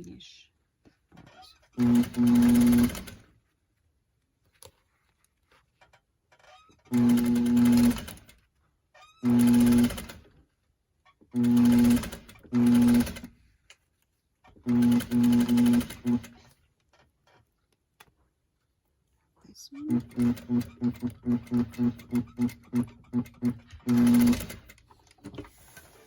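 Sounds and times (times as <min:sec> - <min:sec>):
sewing machine stitching: 0:01.2 - 0:03.3, 0:06.4 - 0:08.4, 0:09.0 - 0:10.4, 0:11.2 - 0:13.4, 0:14.4 - 0:16.6, 0:19.8 - 0:26.0.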